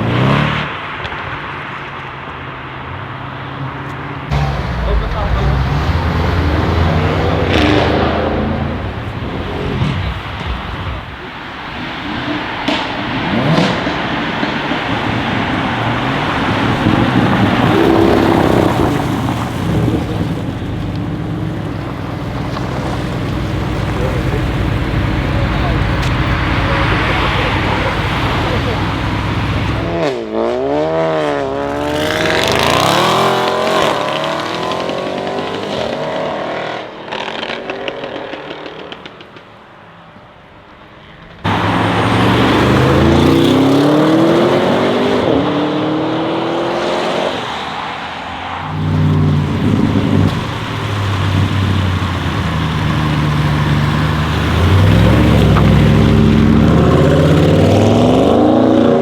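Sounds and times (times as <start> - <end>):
car engine revving and accelerating: 0.0 - 1.2, 4.2 - 39.1, 41.4 - 59.0.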